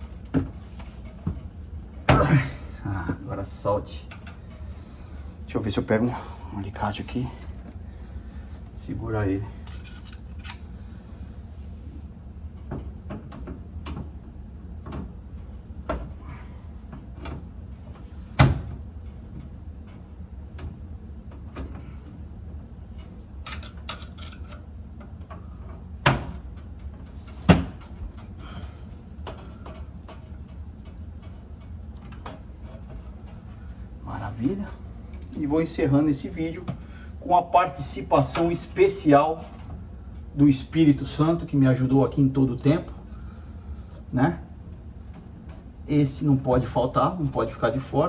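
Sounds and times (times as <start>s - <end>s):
clicks of pliers and wires: 23.0s - 24.6s.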